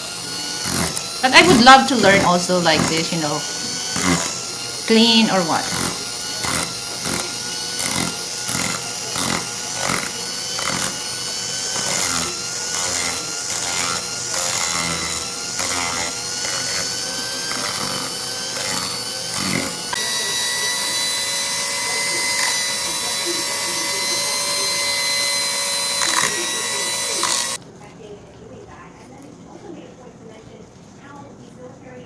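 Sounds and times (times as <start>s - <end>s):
power tool motor: 0.0s - 27.6s
tool scraping metal: 0.0s - 27.6s.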